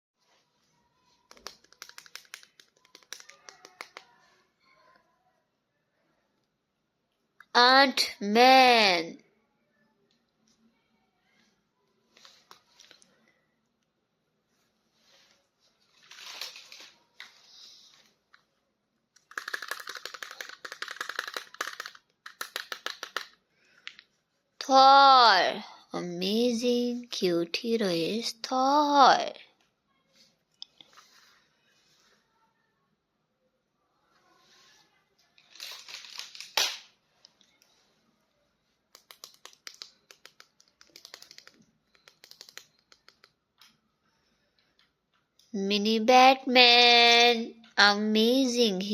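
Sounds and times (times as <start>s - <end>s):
sharp plastic clicks: 1.3s - 4.0s, 19.2s - 24.0s, 38.9s - 43.8s
plastic packaging crinkle: 35.4s - 36.8s.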